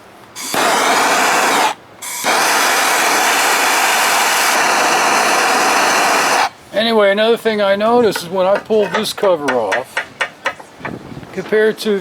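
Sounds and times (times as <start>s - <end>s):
aerosol can spraying: 0.4s - 6.5s.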